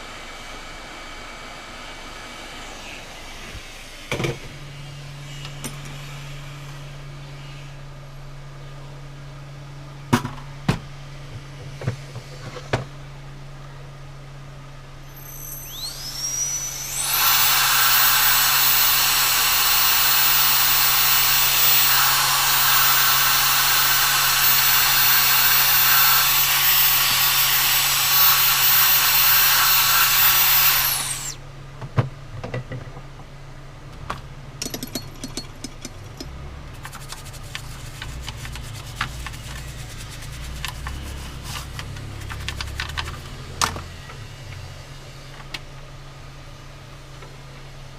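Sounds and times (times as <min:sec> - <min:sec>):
high-speed motor tool whine: 0:00.0 - 0:06.9, 0:15.0 - 0:31.4, 0:37.5 - 0:45.4
low electrical hum: 0:00.0 - 0:47.9.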